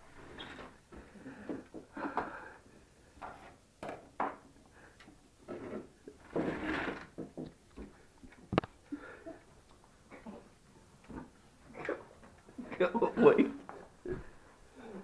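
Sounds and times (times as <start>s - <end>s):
blinds rustling: 5.5s - 7.2s.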